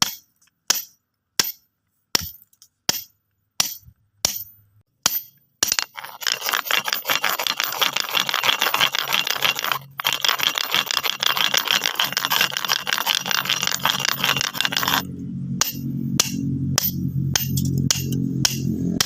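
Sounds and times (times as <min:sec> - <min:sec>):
pebbles rattling and scraping: 0:05.7 - 0:15.0
stones knocking together: 0:05.7 - 0:15.0.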